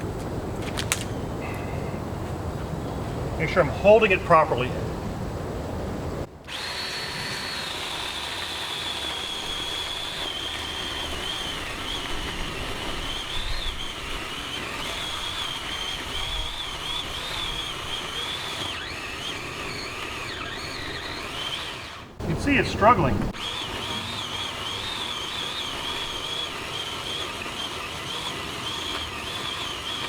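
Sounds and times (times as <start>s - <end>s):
electric chainsaw cutting wood: 6.4s - 30.0s.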